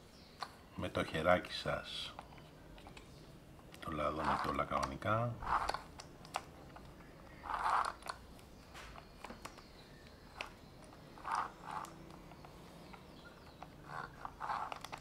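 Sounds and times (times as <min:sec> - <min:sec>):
chain rubbing: 0:04.1 - 0:04.8, 0:05.4 - 0:08.2, 0:10.3 - 0:15.0.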